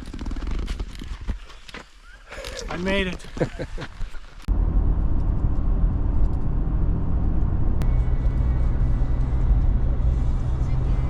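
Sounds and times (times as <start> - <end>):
low hum: 4.5 - 11.0
low rumble: 4.5 - 11.0.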